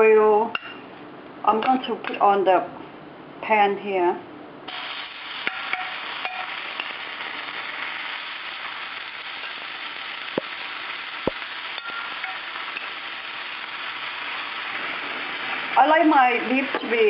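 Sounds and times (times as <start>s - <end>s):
meat sizzling in a pan: 4.7s - 17.0s.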